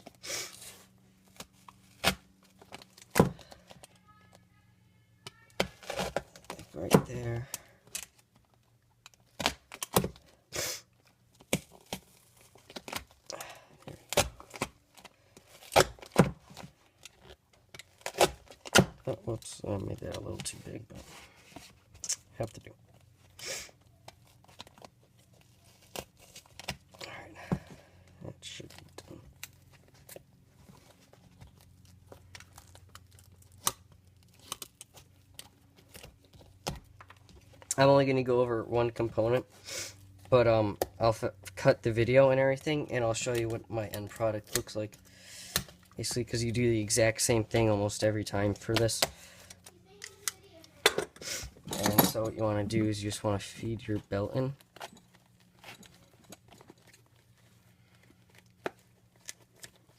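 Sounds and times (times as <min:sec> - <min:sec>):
taped cardboard crinkling: 0:11.0 - 0:27.2, 0:28.4 - 0:37.8, 0:52.4 - 0:59.9
handling clicks and rustles: 0:45.7 - 0:59.9.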